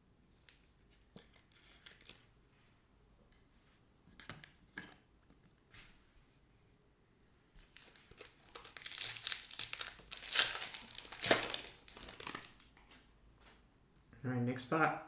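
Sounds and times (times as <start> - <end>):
foil wrapper tearing and crinkling: 7.6 - 12.6.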